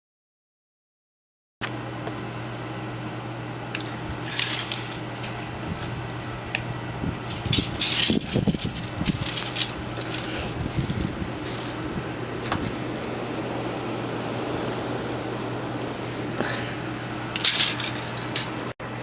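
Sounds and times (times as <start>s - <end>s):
steady low hum: 1.6s - 19.0s
wind rumbling on microphone: 5.5s - 16.4s
blizzard wind gusting: 5.5s - 18.7s.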